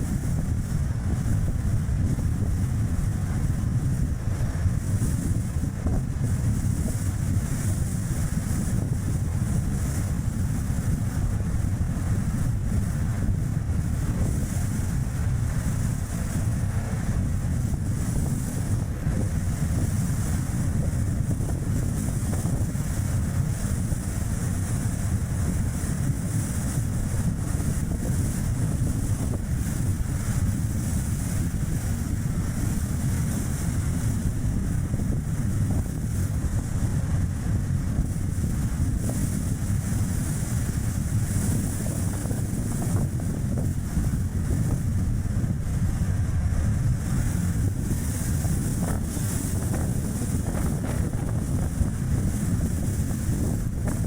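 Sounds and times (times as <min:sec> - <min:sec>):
wind rushing over microphone: 0:00.0 - 0:54.0
tyre and road noise: 0:48.4 - 0:54.0.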